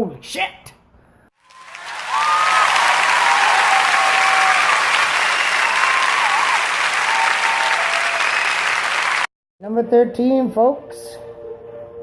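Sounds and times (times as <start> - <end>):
crowd applauding and cheering: 1.4 - 9.3
shrill whistles: 1.4 - 9.3.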